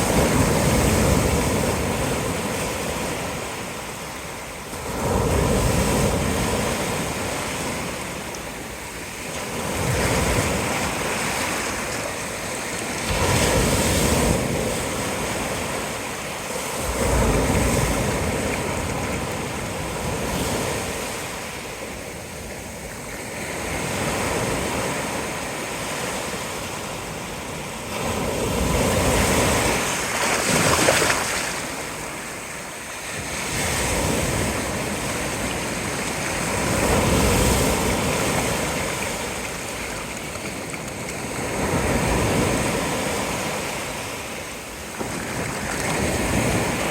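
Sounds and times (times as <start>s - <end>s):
surf waves crashing on beach: 0.0s - 46.9s.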